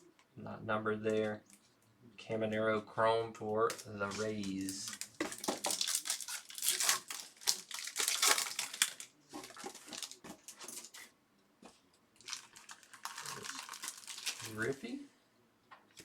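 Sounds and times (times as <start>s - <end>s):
cards rustling: 3.6s - 11.1s, 12.2s - 14.8s
wrapper crinkling and tearing: 3.7s - 11.1s, 12.2s - 14.8s.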